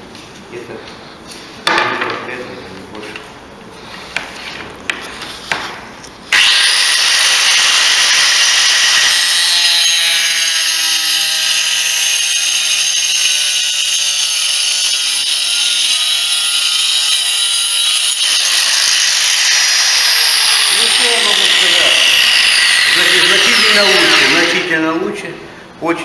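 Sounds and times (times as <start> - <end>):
angle grinder motor whine: 6.3 - 24.7
disc cutting plywood: 6.3 - 24.7.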